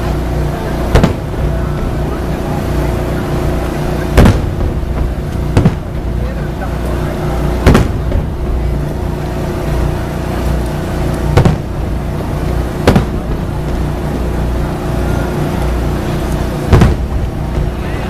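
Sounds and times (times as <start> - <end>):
low rumble: 0.0 - 18.0
firework shells bursting: 0.9 - 1.4, 4.2 - 6.2, 7.6 - 8.6, 11.2 - 11.9, 12.8 - 13.9, 16.7 - 17.8.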